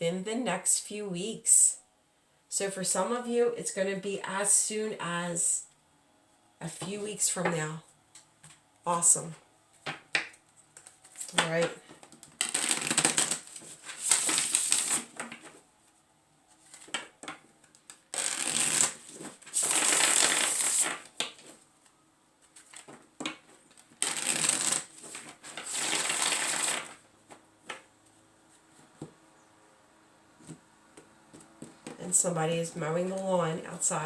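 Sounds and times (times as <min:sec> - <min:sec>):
cards being shuffled: 0:09.7 - 0:15.6, 0:16.5 - 0:21.6, 0:22.4 - 0:27.9.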